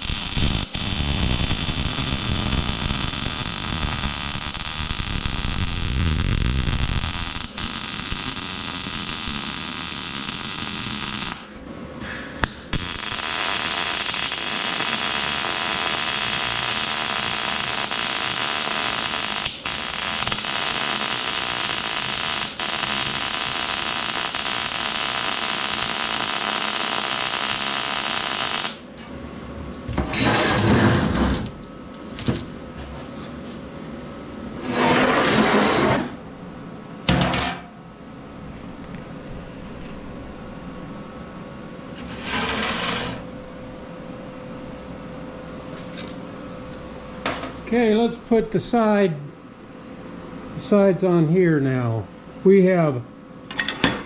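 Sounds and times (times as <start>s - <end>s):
welding arc hissing: 0.0s - 28.9s, 42.0s - 43.3s.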